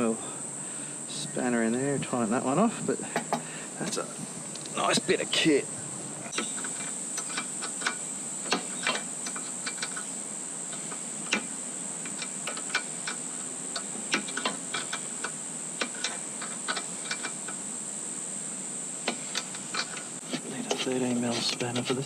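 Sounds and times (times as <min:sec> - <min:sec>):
insects droning: 0:00.0 - 0:22.0
spanner clicking on bolt: 0:06.3 - 0:10.1, 0:10.7 - 0:17.4.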